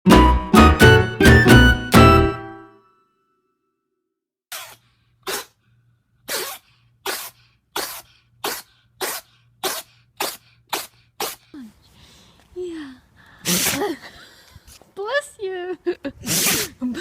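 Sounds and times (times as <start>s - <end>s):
animal sneezing: 4.5s - 5.6s, 6.2s - 11.6s, 13.4s - 14.0s, 16.2s - 16.9s.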